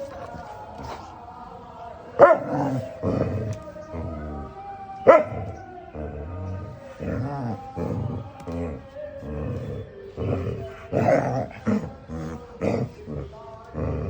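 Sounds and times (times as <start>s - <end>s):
background music: 0.0s - 14.0s
dog barking: 2.2s - 3.4s, 5.0s - 5.6s
dog grumbling: 5.1s - 14.0s.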